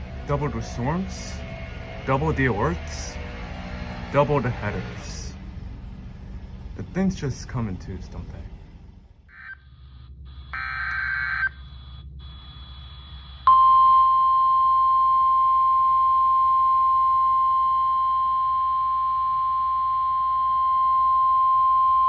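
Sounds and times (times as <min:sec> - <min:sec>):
screechy data burst: 0:09.3 - 0:13.5
steady warning alarm tone: 0:09.3 - 0:20.8.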